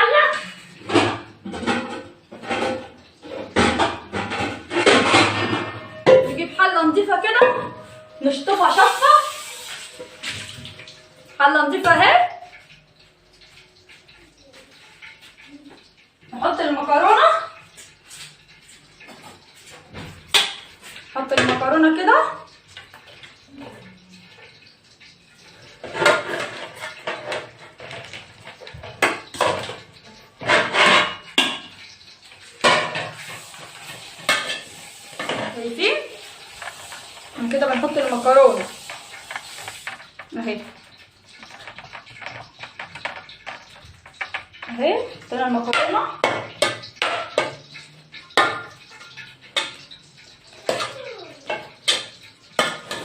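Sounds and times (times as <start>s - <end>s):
metal pot and utensils clattering: 0.0s - 53.0s.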